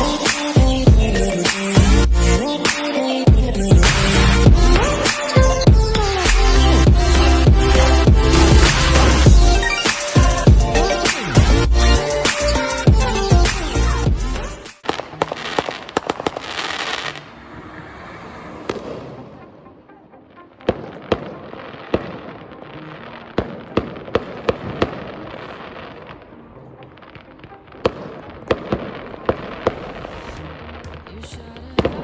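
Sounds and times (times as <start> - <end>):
fireworks crackling: 0.0 - 3.1, 3.8 - 32.0
fireworks bangs: 14.7 - 19.9, 20.6 - 31.0.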